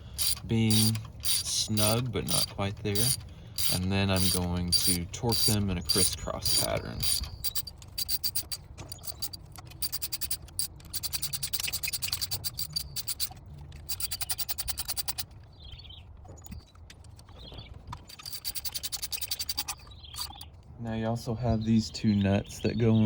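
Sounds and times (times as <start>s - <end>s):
socket ratchet clicking: 0.0s - 15.3s, 18.1s - 20.5s.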